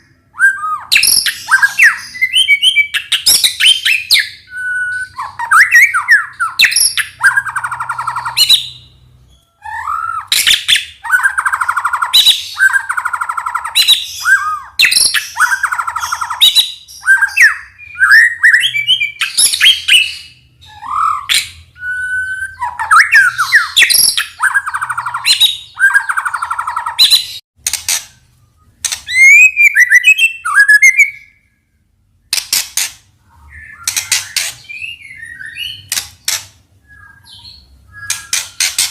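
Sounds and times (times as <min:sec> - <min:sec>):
bird singing whistles and rattles: 0:00.4 - 0:31.3, 0:32.3 - 0:38.9.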